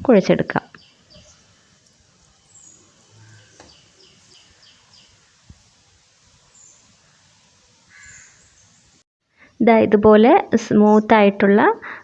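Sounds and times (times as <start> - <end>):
bird chirping: 0.6 - 5.5, 6.4 - 9.0.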